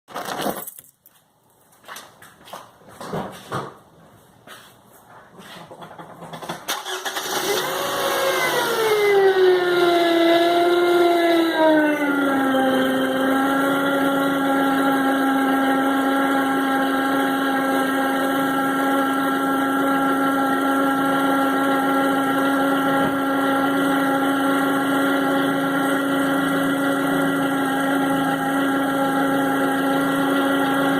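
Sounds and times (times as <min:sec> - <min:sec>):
alternator whining: 0:06.4 - 0:30.9.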